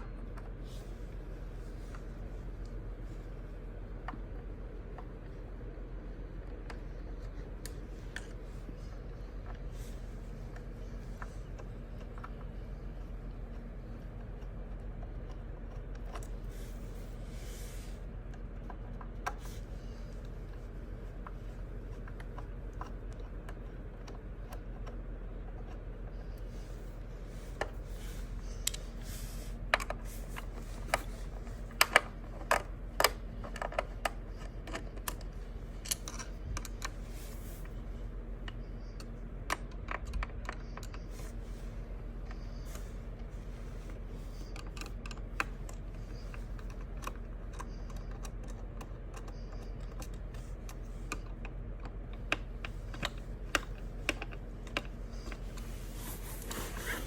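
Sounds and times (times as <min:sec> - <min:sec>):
steady low hum: 0:00.0 - 0:57.0
metal parts clicking and tapping: 0:31.7 - 0:37.0, 0:44.4 - 0:55.6.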